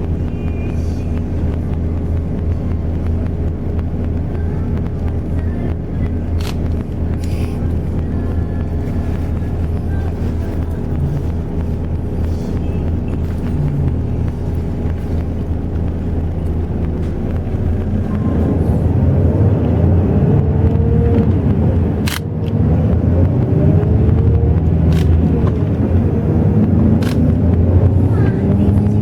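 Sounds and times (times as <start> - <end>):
bus engine and road rumble: 0.0 - 29.0
sharp clicks or rattles: 22.0 - 22.6, 24.8 - 25.8, 26.6 - 27.4.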